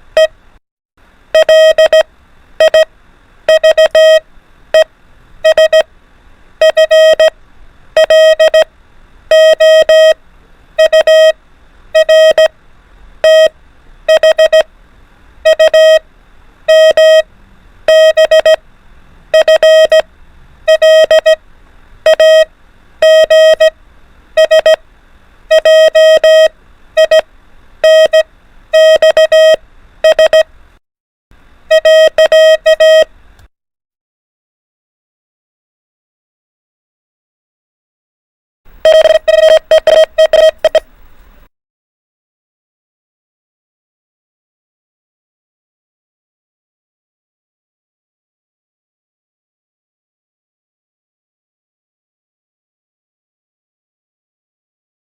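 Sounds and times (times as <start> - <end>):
morse code beeps: 1.4 - 2.9, 3.5 - 4.2, 4.8 - 5.9, 6.6 - 7.3, 8.0 - 8.7, 9.3 - 10.2, 10.8 - 11.4, 12.0 - 12.5, 13.2 - 13.5, 14.1 - 14.7, 15.4 - 16.0, 16.7 - 17.3, 17.9 - 18.6, 19.3 - 20.0, 20.7 - 21.4, 22.0 - 23.8, 24.4 - 24.8, 25.5 - 27.2, 27.8 - 30.5, 31.7 - 33.1, 38.8 - 40.9.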